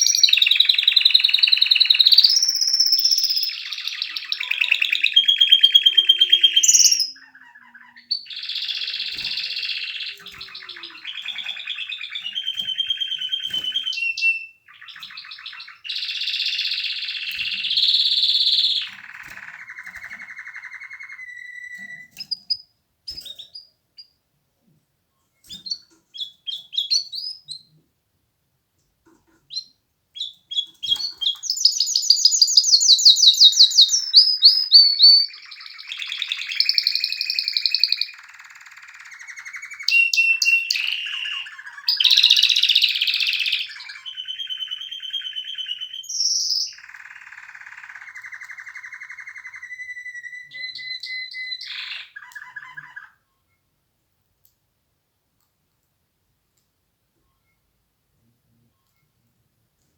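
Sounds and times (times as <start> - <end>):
canary trilling: 0.0 - 24.1, 29.5 - 53.2.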